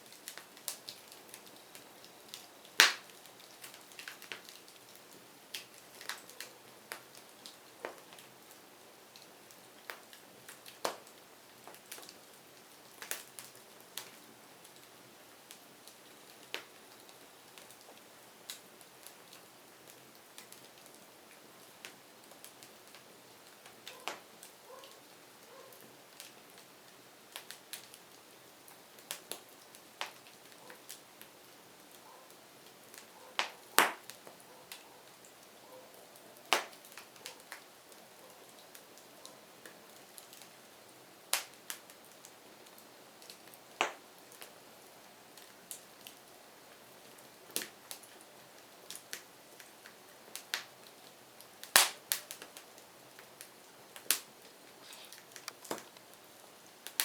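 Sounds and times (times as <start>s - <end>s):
faint low hiss: 0.0s - 57.0s
firewood crackling and popping: 0.0s - 57.0s.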